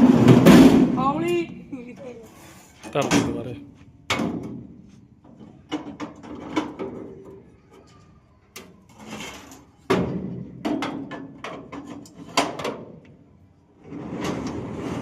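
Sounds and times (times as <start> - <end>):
irregular knocks and bangs: 4.1 - 4.8.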